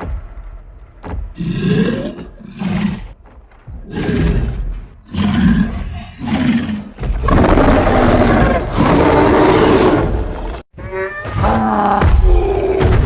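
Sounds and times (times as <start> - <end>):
monster roar: 3.9 - 10.6.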